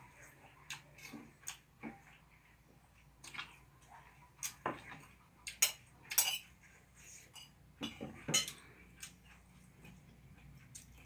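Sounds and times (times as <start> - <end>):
utensils clinking against dish: 5.5 - 6.5, 7.3 - 8.7.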